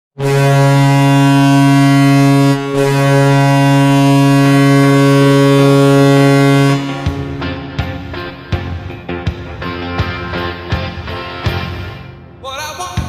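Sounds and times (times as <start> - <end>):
goal horn blasts: 0.2 - 8.8.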